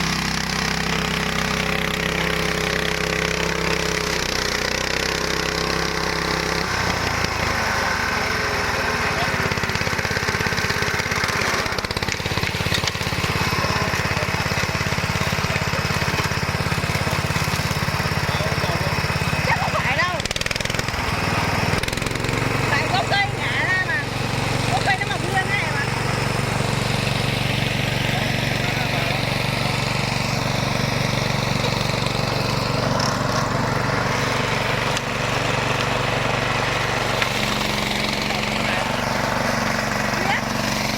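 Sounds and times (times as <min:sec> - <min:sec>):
mower engine running: 0:00.0 - 0:40.9.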